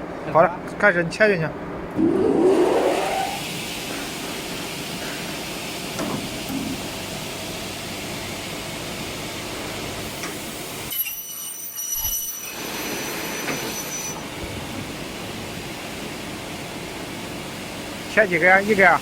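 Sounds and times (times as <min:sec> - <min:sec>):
high-pitched saw whine: 0:02.0 - 0:03.5.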